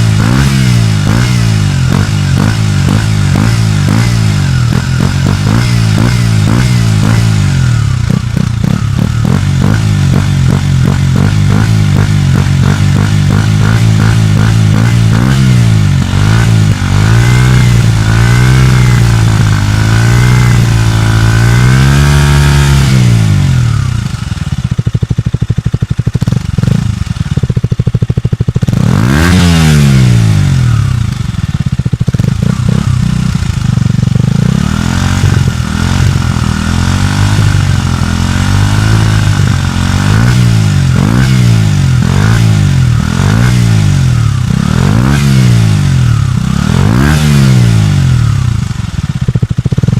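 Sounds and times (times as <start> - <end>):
motorcycle engine revving: 0.0 - 49.9.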